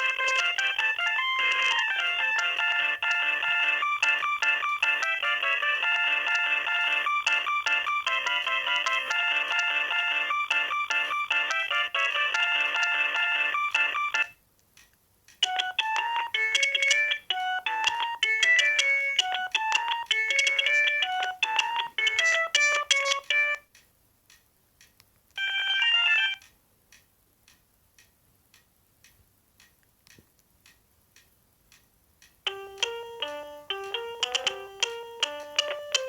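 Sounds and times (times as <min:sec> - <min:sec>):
phone ringtone melodies: 0:00.0 - 0:14.4, 0:15.4 - 0:23.6, 0:25.4 - 0:26.4, 0:32.5 - 0:36.0
faint ticks: 0:22.9 - 0:25.4, 0:26.4 - 0:34.4.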